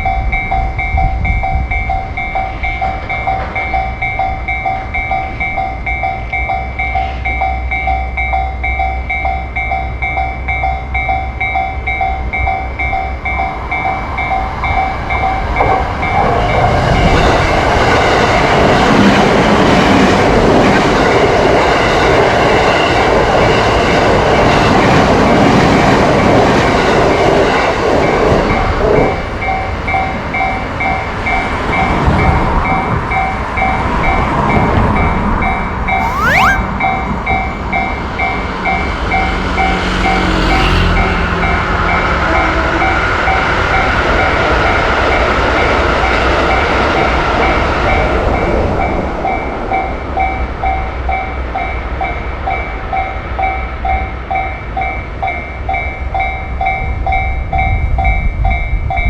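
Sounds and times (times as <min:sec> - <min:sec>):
railroad crossing bell ringing: 0:00.0 - 0:16.2, 0:49.2 - 0:59.0
train passing: 0:36.6 - 0:56.1.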